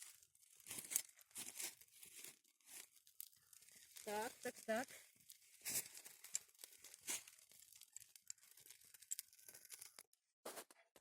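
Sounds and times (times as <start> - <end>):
dry crackling and crinkling: 0.0 - 10.2.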